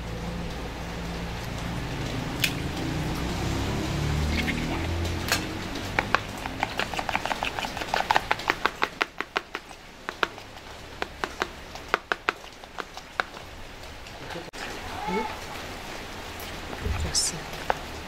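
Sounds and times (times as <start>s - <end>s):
low hum: 0.0s - 6.6s.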